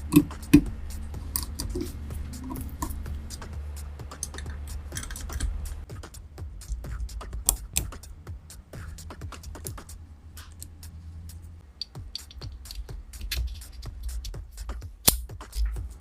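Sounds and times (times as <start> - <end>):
background music: 0.0 - 16.0
small metal parts clicking: 4.1 - 5.8, 10.4 - 14.4.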